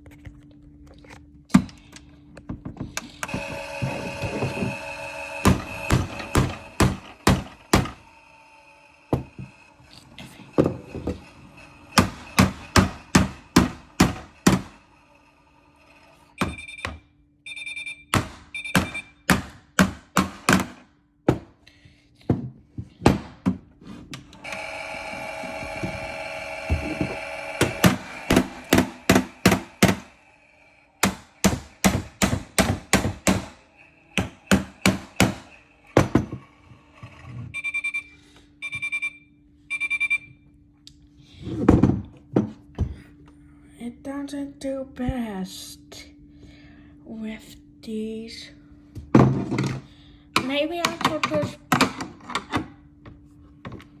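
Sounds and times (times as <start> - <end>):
low motor hum: 0.0 - 16.3, 24.1 - 32.3
rocks knocking in washing machine: 5.4 - 8.0
short electronic beeps: 16.4 - 16.9, 17.5 - 19.2, 37.6 - 40.4.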